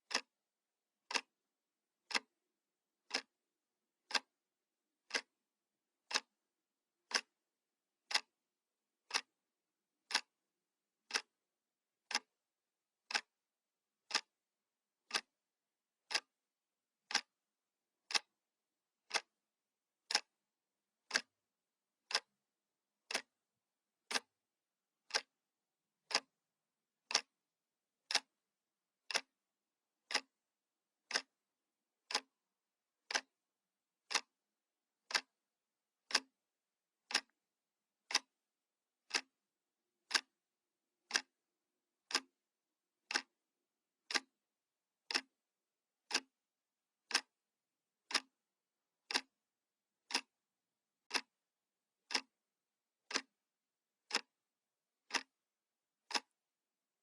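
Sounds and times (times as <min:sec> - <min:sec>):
clock ticking: 0:00.0 - 0:00.3, 0:01.0 - 0:01.3, 0:02.1 - 0:02.3, 0:03.0 - 0:03.3, 0:04.0 - 0:04.3, 0:05.0 - 0:05.4, 0:06.0 - 0:06.4, 0:07.0 - 0:07.4, 0:08.1 - 0:08.4, 0:09.1 - 0:09.3, 0:10.1 - 0:10.4, 0:11.0 - 0:11.4, 0:12.0 - 0:12.4, 0:13.0 - 0:13.3, 0:14.1 - 0:14.4, 0:15.0 - 0:15.3, 0:16.0 - 0:16.4, 0:17.0 - 0:17.4, 0:18.0 - 0:18.4, 0:19.0 - 0:19.4, 0:20.0 - 0:20.4, 0:21.0 - 0:21.4, 0:22.0 - 0:22.3, 0:23.0 - 0:23.4, 0:24.0 - 0:24.3, 0:25.0 - 0:25.4, 0:26.0 - 0:26.4, 0:27.0 - 0:27.4, 0:28.1 - 0:28.4, 0:29.0 - 0:29.4, 0:30.1 - 0:30.4, 0:31.0 - 0:31.4, 0:32.0 - 0:32.4, 0:33.0 - 0:33.4, 0:34.1 - 0:34.4, 0:35.0 - 0:35.4, 0:36.0 - 0:36.4, 0:37.0 - 0:37.4, 0:38.0 - 0:38.3, 0:39.0 - 0:39.4, 0:40.1 - 0:40.4, 0:41.1 - 0:41.4, 0:42.0 - 0:42.4, 0:43.0 - 0:43.3, 0:44.1 - 0:44.3, 0:45.1 - 0:45.3, 0:46.1 - 0:46.3, 0:47.1 - 0:47.4, 0:48.0 - 0:48.4, 0:49.1 - 0:49.4, 0:50.1 - 0:50.3, 0:51.1 - 0:51.4, 0:52.1 - 0:52.3, 0:53.1 - 0:53.4, 0:54.1 - 0:54.3, 0:55.0 - 0:55.4, 0:56.0 - 0:56.4.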